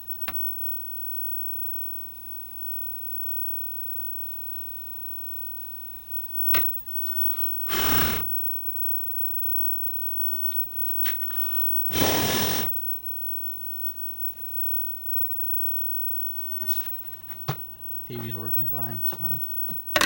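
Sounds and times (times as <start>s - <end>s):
aerosol spray can hissing: 7.4s - 8.3s, 11.9s - 12.7s.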